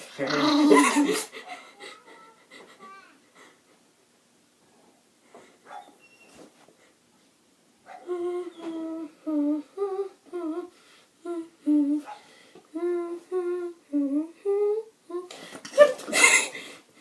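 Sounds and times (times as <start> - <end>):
person humming: 8.0 - 12.1, 12.7 - 15.4.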